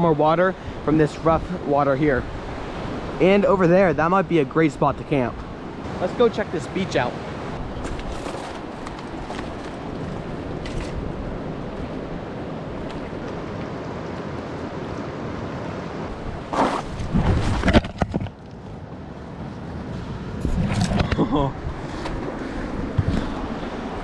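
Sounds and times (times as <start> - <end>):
river water rushing: 5.4 - 17.6.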